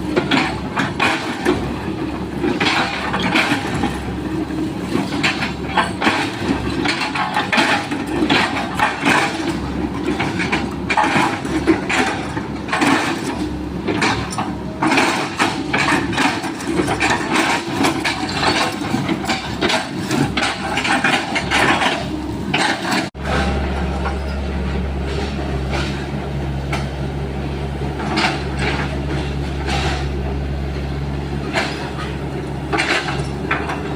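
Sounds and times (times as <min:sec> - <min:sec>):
excavator engine running: 0:00.0 - 0:33.9.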